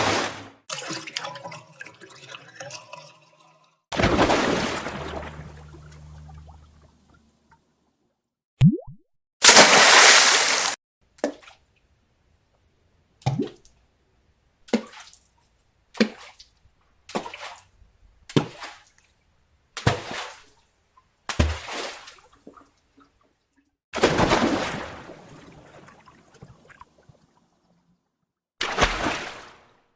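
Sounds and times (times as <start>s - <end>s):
water splashes and plops: 3.9s - 6.8s, 8.6s - 11.4s, 21.3s - 23.1s, 24.0s - 27.4s, 28.6s - 29.7s.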